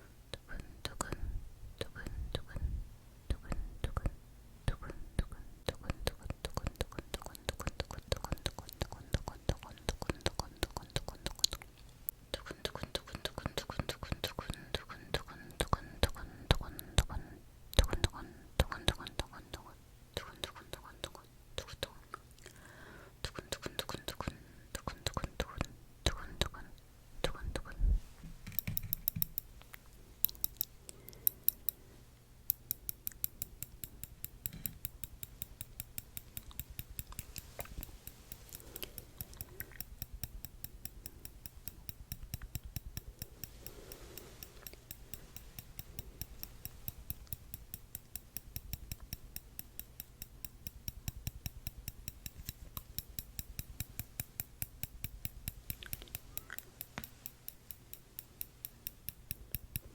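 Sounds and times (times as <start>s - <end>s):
metal tweezers clicking: 28.5s - 31.8s, 32.4s - 59.9s.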